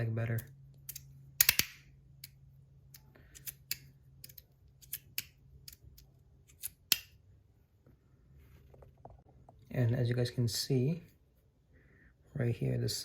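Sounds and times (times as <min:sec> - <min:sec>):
sharp metallic clicks: 0:00.3 - 0:05.8.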